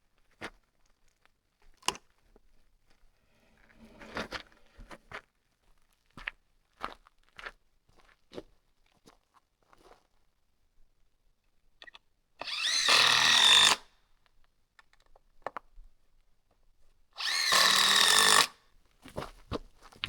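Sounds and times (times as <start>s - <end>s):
power drill running: 12.4s - 13.8s, 17.2s - 18.5s.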